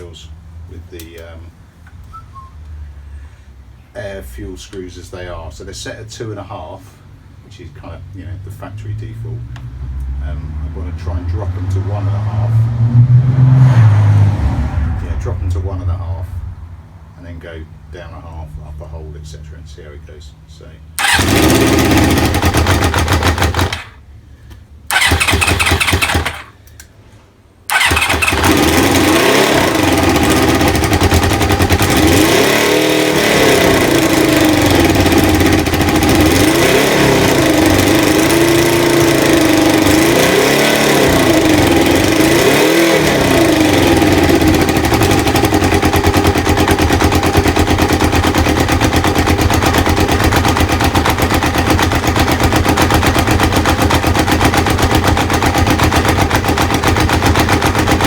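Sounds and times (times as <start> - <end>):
motorcycle engine revving and idling: 7.8 - 16.2, 21.0 - 24.1, 24.9 - 26.6, 27.7 - 58.0
starter motor cranking: 21.0 - 24.0, 24.9 - 26.6, 27.7 - 47.5.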